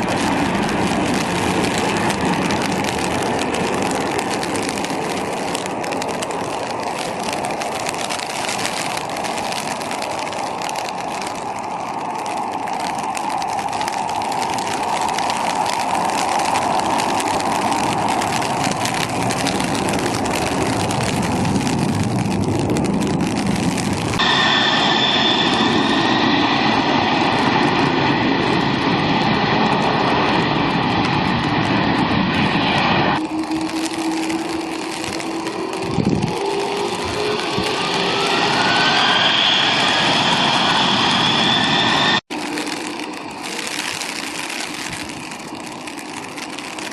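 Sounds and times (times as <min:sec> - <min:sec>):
jet engines rushing: 0:00.0 - 0:46.9
high-pitched jet whine: 0:24.1 - 0:45.1.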